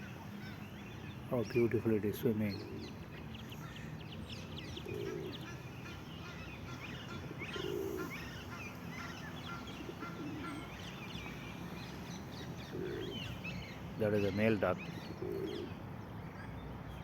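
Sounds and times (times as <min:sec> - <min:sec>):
small birds chirping: 0:00.0 - 0:17.0
ducks and geese calling: 0:04.8 - 0:11.5.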